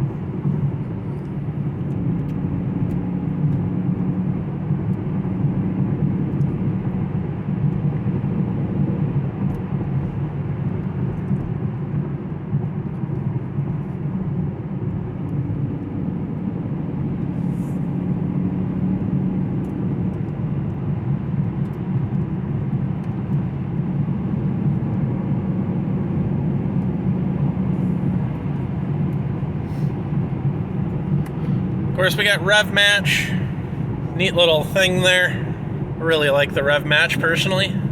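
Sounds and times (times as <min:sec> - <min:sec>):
car engine cruising: 0:12.9 - 0:37.9
tyre and road noise: 0:27.3 - 0:37.9.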